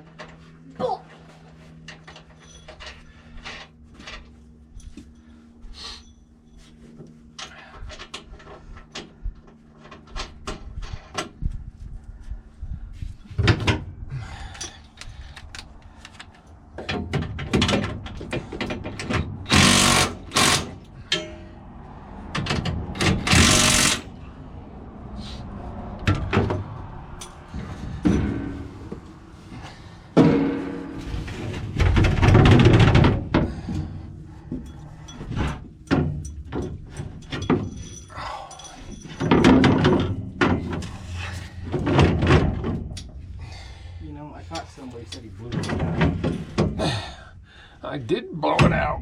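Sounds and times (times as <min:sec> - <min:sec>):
tools and metal parts clanking: 0:01.8 - 0:05.2, 0:14.5 - 0:21.6, 0:27.2 - 0:29.1, 0:30.1 - 0:43.4, 0:44.4 - 0:46.8.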